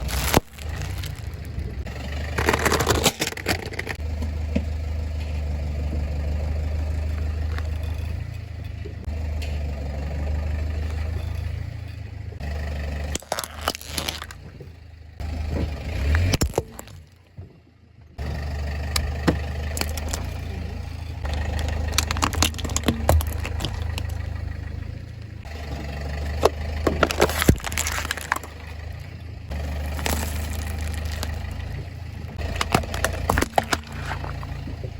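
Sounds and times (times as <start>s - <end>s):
tyres crushing brittle objects: 0.0s - 4.0s, 13.0s - 14.6s, 16.0s - 17.2s, 18.9s - 20.6s, 21.2s - 24.8s, 25.7s - 34.9s
car engine hum: 0.0s - 34.9s.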